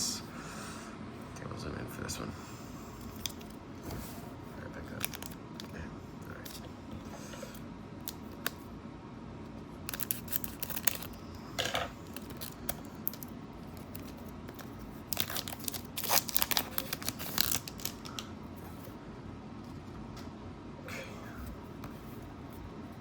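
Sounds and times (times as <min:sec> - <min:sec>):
plastic wrapper crinkling and tearing: 0:05.0 - 0:05.4, 0:09.8 - 0:11.2, 0:12.0 - 0:18.2.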